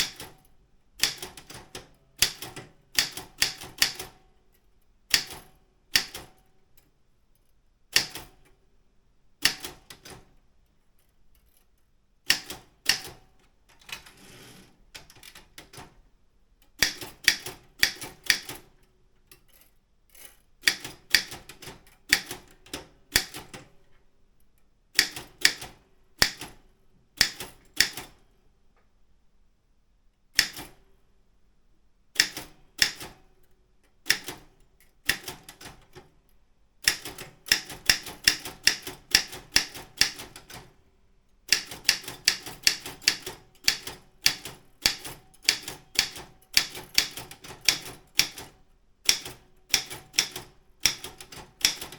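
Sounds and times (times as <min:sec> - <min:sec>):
typewriter type-bar strikes: 0:00.0 - 0:00.4, 0:01.0 - 0:04.2, 0:05.1 - 0:06.4, 0:07.9 - 0:08.4, 0:09.4 - 0:10.3, 0:12.3 - 0:15.9, 0:16.8 - 0:18.8, 0:20.2 - 0:23.8, 0:25.0 - 0:26.6, 0:27.2 - 0:28.2, 0:30.4 - 0:30.9, 0:32.2 - 0:33.2, 0:34.0 - 0:36.0, 0:36.8 - 0:40.8, 0:41.5 - 0:51.9
typewriter rasping: 0:13.8 - 0:14.8.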